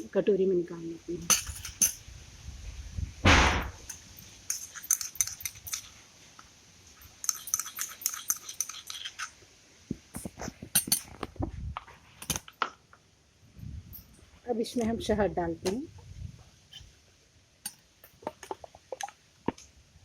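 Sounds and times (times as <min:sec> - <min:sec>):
spoon scraping and clicking on bowl: 0:03.9 - 0:06.0, 0:07.0 - 0:09.4.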